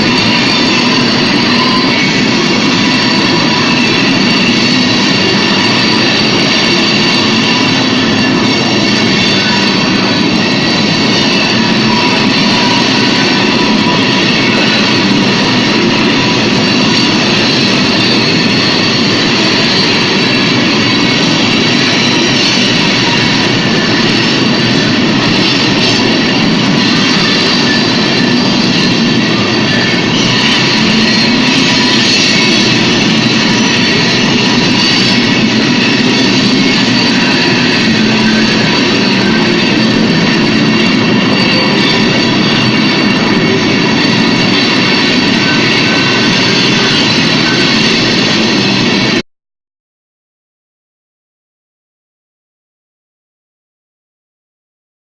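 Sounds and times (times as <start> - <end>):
high whining tones: 0.0 - 49.2.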